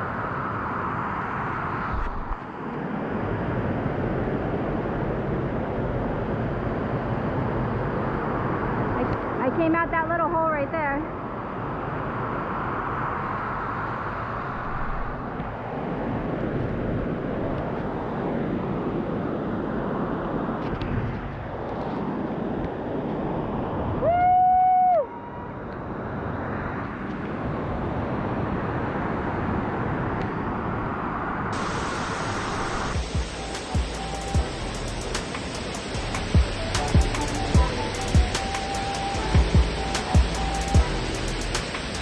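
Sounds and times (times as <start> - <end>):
waterfall roaring: 31.6 - 42.0
short whistle-like tone: 31.9 - 41.7.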